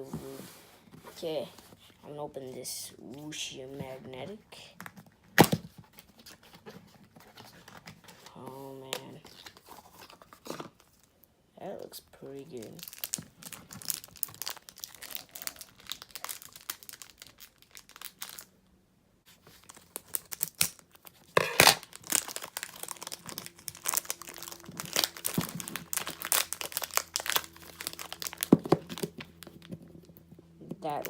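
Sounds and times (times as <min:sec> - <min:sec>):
packaging crinkling and tearing: 0:05.4 - 0:11.1, 0:12.6 - 0:18.5, 0:19.3 - 0:31.0.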